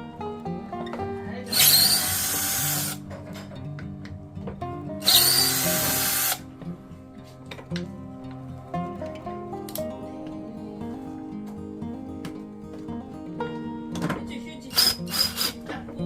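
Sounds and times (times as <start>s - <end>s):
background music: 0.0s - 16.0s
power drill whining: 1.5s - 3.0s, 5.0s - 6.4s, 14.7s - 15.7s.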